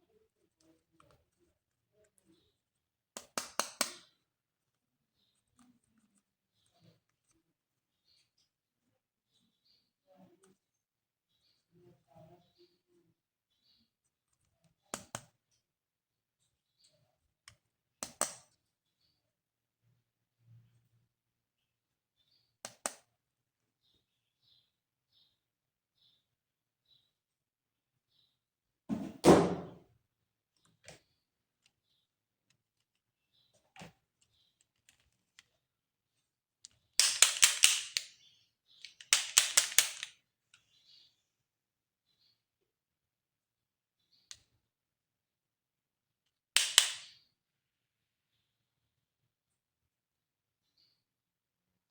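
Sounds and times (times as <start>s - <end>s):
plastic toy parts clicking: 36.6s - 40.2s, 46.6s - 47.1s.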